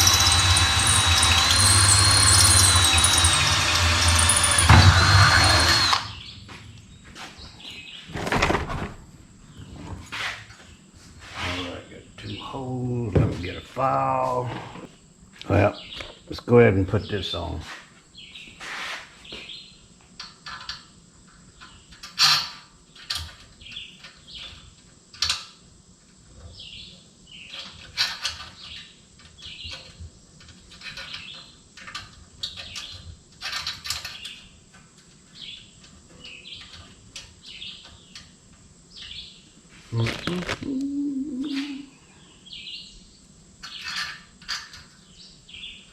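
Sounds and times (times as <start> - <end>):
birds chirping: 0.0 - 8.6, 10.6 - 18.6, 38.9 - 44.0.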